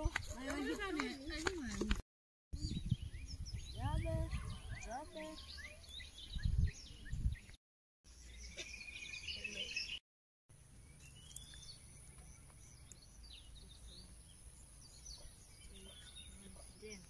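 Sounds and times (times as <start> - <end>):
birds chirping and calling: 2.6 - 10.0, 10.8 - 17.0.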